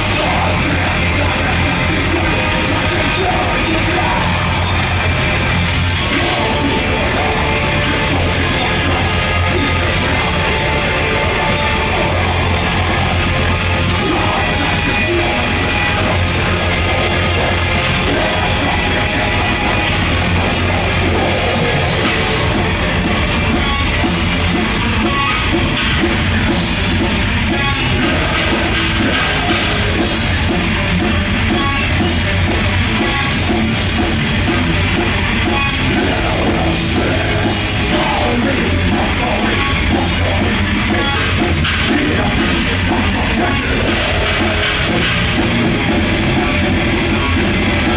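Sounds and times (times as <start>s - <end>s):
heavy metal band playing: 0.0s - 47.9s.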